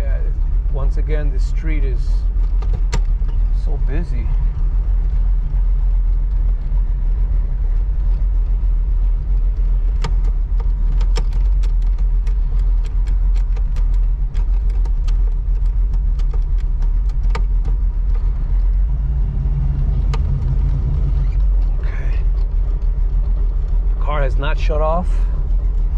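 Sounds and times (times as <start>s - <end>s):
car engine rumbling: 0.0s - 25.9s
sharp clicks: 9.9s - 17.8s.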